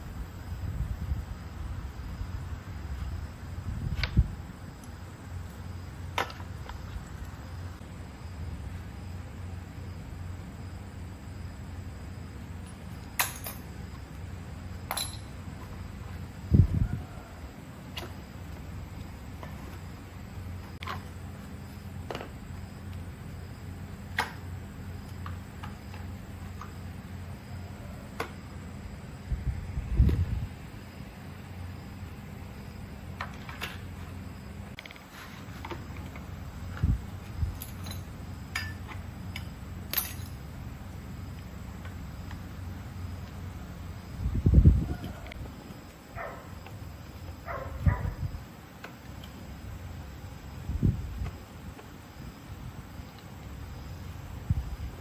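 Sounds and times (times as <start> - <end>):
steady low hum: 0.0 - 55.0
steady low rumble: 26.1 - 33.1
tools and parts clicking: 37.6 - 40.4.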